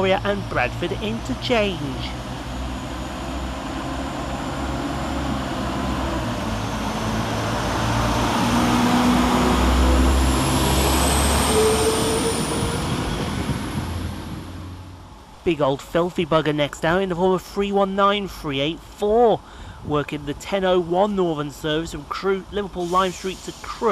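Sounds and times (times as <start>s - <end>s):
diesel train engines under load: 0.0s - 23.9s.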